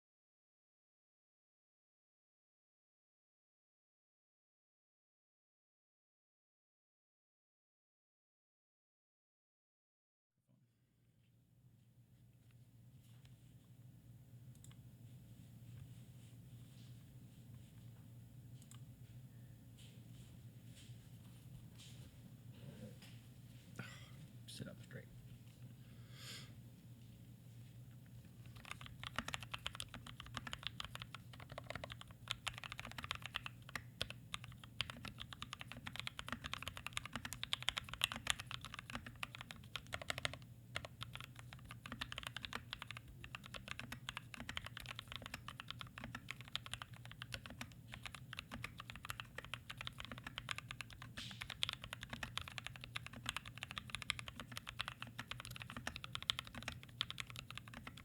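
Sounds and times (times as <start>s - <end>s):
mechanical keyboard typing: 28.4s - 58.0s.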